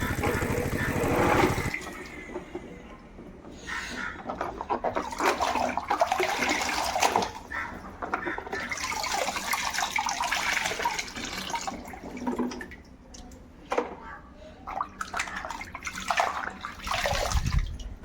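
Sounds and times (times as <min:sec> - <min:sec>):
water splashing over plastic toys: 0:04.3 - 0:13.6, 0:14.6 - 0:18.0.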